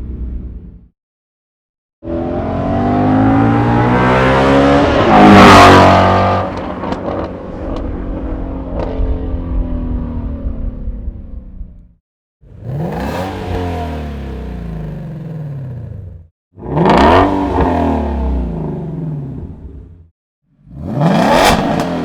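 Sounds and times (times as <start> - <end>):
car engine revving: 2.0 - 11.9, 12.5 - 20.1, 20.7 - 22.0.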